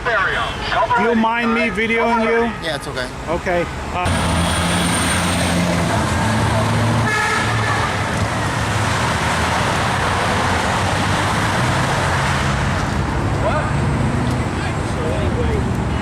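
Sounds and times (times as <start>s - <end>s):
heavy traffic passing: 0.0s - 16.0s
car horn honking: 0.1s - 3.8s, 7.0s - 8.2s.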